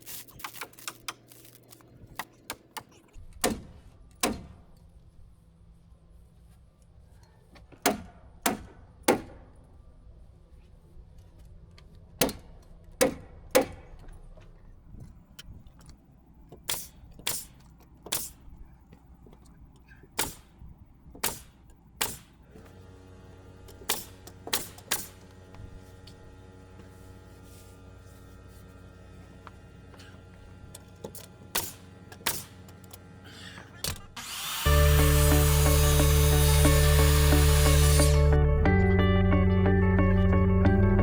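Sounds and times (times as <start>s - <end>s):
fasteners driven into wall: 2.1s - 4.8s.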